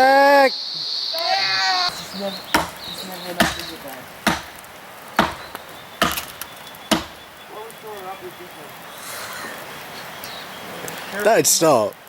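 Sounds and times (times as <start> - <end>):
sharp knocks: 1.9 - 7.4
faint voices: 1.9 - 11.9.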